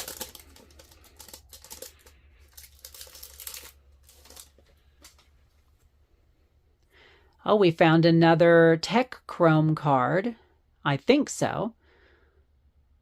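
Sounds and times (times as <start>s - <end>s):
trading cards rustling and clicking: 0.0s - 5.4s.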